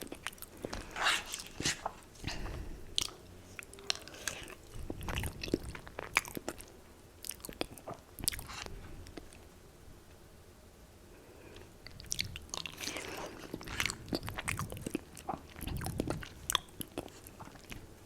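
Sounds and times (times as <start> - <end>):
crunchy chewing of fried chicken: 0.0 - 9.4, 11.5 - 18.0.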